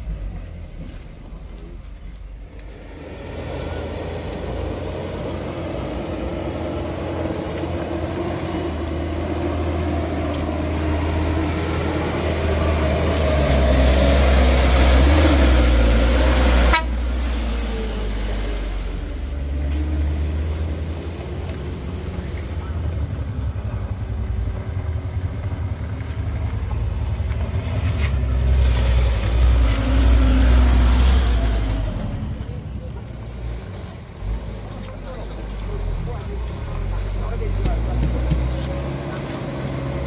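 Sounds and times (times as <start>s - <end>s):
diesel truck engine labouring: 0.0s - 40.0s.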